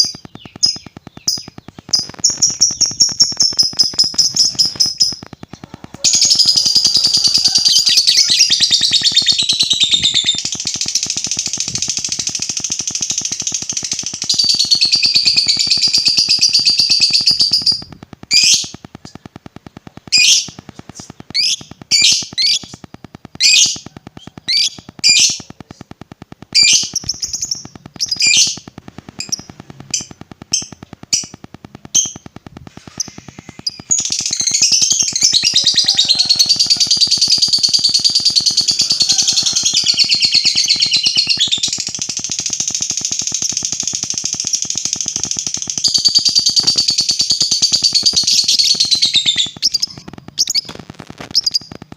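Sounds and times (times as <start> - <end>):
lovebird chattering trill: 0.0 - 19.2, 20.0 - 51.8.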